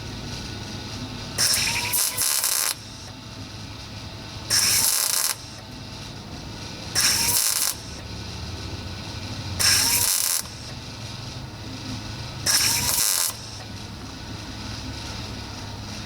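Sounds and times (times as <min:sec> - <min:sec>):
low steady welder hum: 0:00.0 - 0:16.0
welding arc crackle: 0:00.1 - 0:03.1, 0:04.4 - 0:05.6, 0:06.7 - 0:11.5, 0:12.1 - 0:14.0.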